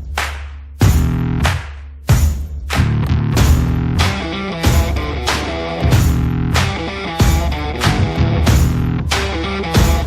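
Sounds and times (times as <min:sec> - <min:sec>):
rock music with distorted guitar: 0:02.9 - 0:10.0.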